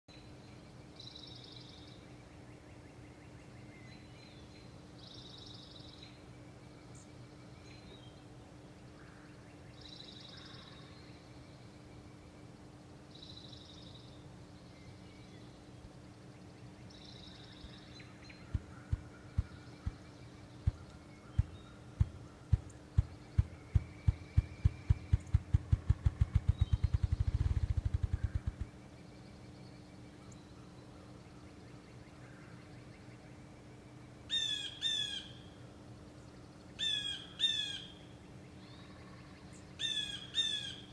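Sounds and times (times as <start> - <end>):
grouse wing drumming: 18.4 - 28.8.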